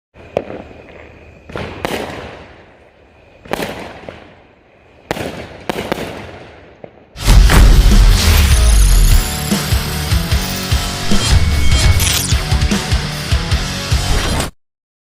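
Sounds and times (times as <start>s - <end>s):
fireworks bangs: 0.2s - 2.8s, 3.4s - 4.4s, 5.0s - 9.1s.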